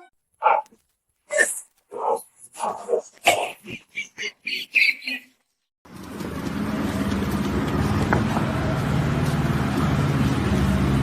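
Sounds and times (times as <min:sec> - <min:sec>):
engine running with low hum: 0:05.9 - 0:11.0.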